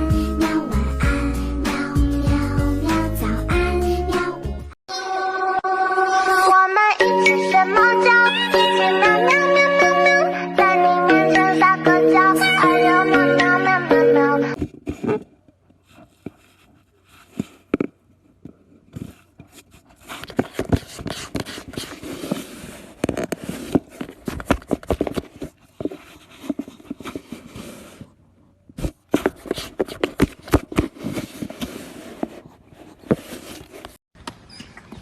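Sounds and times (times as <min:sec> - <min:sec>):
scraping and rustling: 0:14.5 - 0:28.2, 0:28.8 - 0:34.0.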